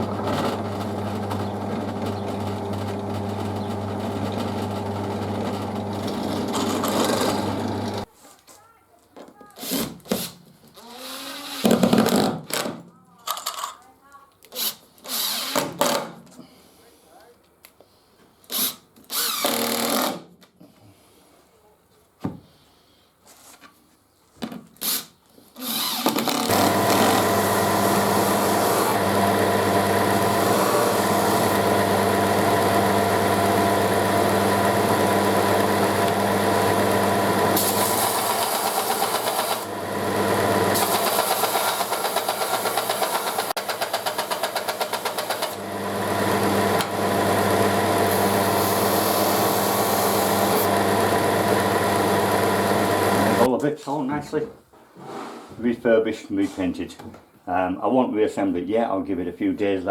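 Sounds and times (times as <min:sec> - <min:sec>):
power tool motor running under load: 0:00.1 - 0:08.1, 0:25.6 - 0:53.5.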